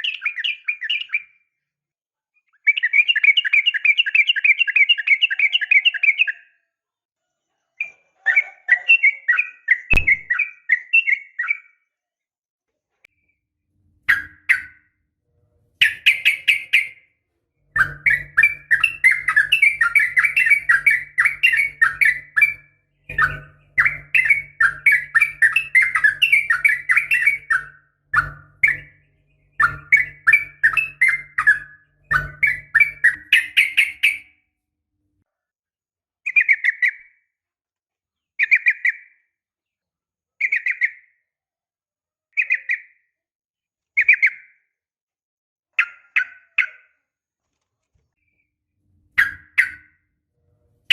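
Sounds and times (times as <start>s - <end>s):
bulbul chattering: 15.8s - 17.0s, 17.7s - 34.3s, 49.2s - 49.9s.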